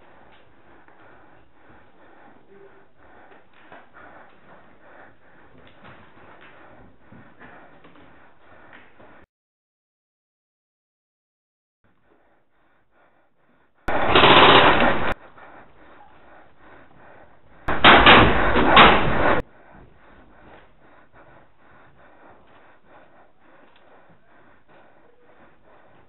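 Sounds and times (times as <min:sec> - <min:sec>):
rapid airsoft gunfire: 0:13.9 - 0:15.2, 0:17.7 - 0:19.4.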